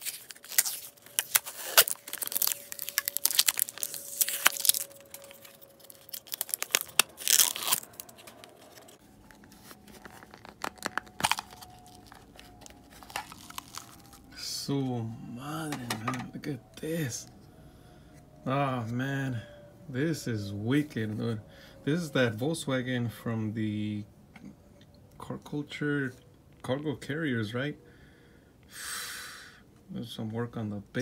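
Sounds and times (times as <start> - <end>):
packaging tearing and crumpling: 0.0 - 14.4.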